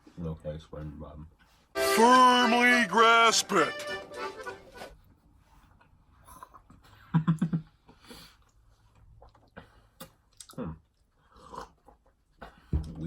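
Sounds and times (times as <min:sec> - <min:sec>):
mouth chewing candy: 0:08.4 - 0:12.6.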